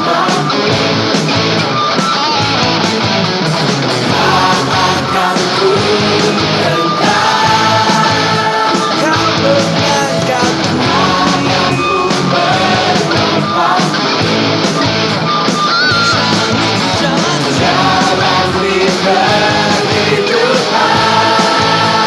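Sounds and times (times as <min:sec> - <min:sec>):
lead guitar melody: 0:00.0 - 0:22.0
rock band backing track: 0:00.0 - 0:22.0.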